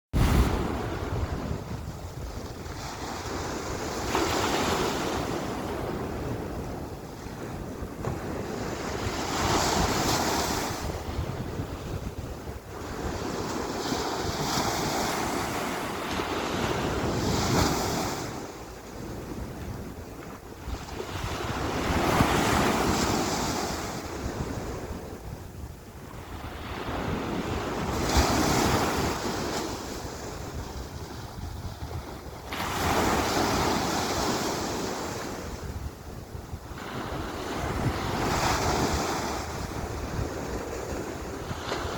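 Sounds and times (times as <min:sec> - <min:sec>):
wind rumbling on microphone: 0:00.1 - 0:41.9
sea waves breaking: 0:00.2 - 0:11.9.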